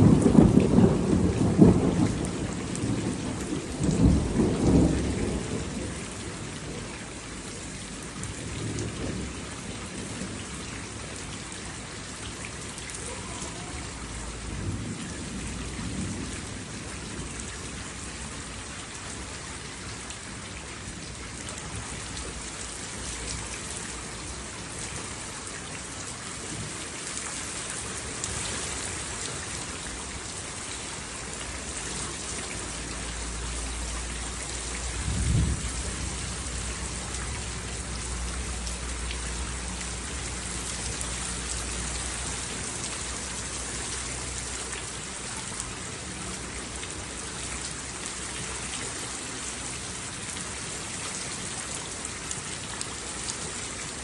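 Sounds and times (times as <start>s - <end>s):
thunder rumbling: 0.0s - 7.2s, 33.2s - 37.8s
steady rain falling: 0.0s - 54.0s.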